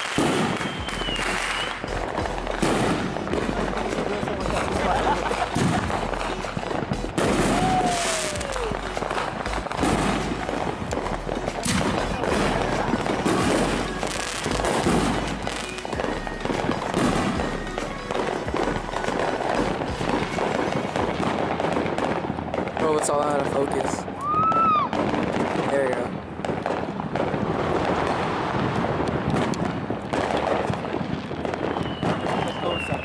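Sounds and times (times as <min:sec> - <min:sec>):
firework falling whistle: 0:00.0 - 0:02.0, 0:07.2 - 0:10.8, 0:11.6 - 0:22.1, 0:24.1 - 0:25.0, 0:31.4 - 0:33.0
fireworks crackling and banging: 0:00.0 - 0:33.0.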